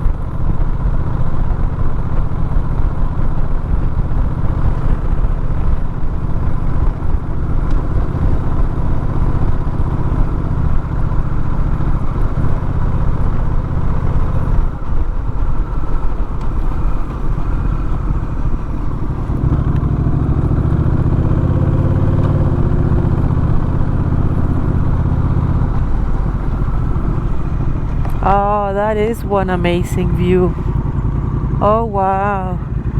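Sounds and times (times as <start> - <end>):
heavy low rumble: 0.0 - 32.9
motorcycle engine running: 0.0 - 32.9
wind and road noise: 0.0 - 32.9.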